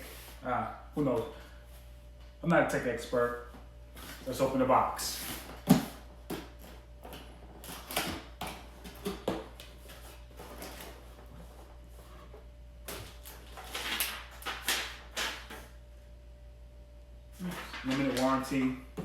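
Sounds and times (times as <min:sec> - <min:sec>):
cardboard and paper rustling: 0:03.9 - 0:15.7, 0:17.4 - 0:18.7.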